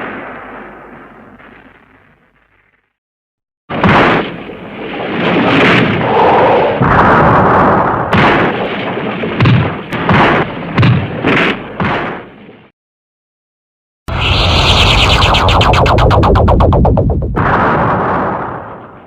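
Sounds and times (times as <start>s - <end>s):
heavy explosions and crashing: 3.7s - 12.4s, 14.1s - 19.0s
sharp impacts: 14.1s - 18.8s.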